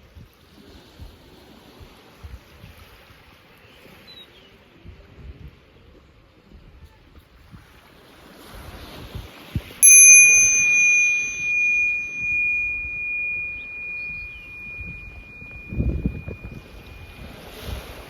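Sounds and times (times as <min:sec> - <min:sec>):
meditation bell ringing: 0:09.8 - 0:17.2.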